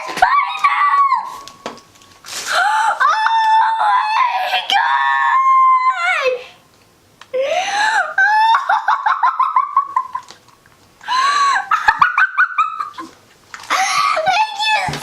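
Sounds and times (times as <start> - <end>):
girls squealing: 0.0 - 1.5, 2.5 - 6.5.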